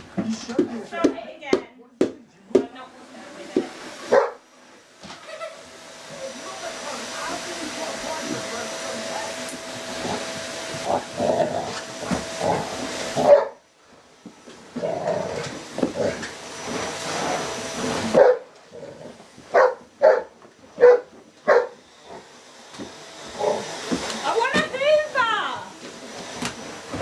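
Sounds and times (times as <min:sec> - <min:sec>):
vacuum cleaner hiss: 0:02.7 - 0:27.0
dog barking: 0:04.1 - 0:04.4, 0:13.2 - 0:13.6, 0:18.2 - 0:18.5, 0:19.5 - 0:21.8.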